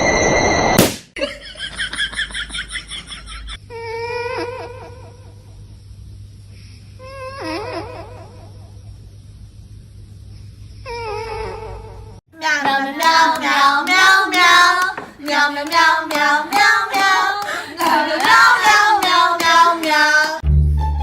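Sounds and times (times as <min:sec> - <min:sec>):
high voice singing: 0:12.4 - 0:20.4.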